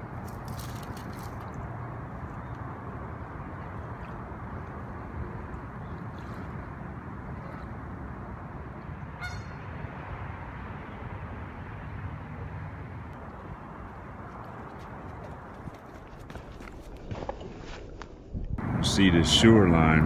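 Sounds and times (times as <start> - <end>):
outdoor background noise: 0.0 - 20.0
short honk: 9.2 - 9.6.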